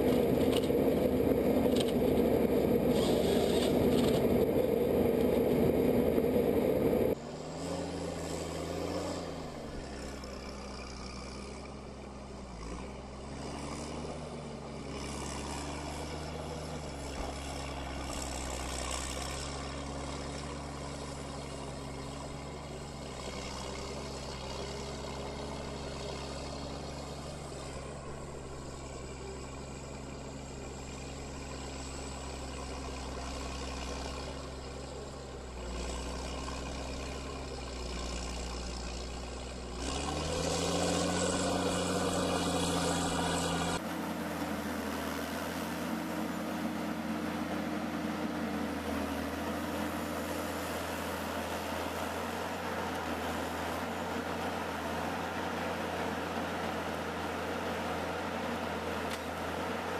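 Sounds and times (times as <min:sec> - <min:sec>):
loud rough noise: 0:00.0 - 0:09.3
machine engine running: 0:00.0 - 0:11.8.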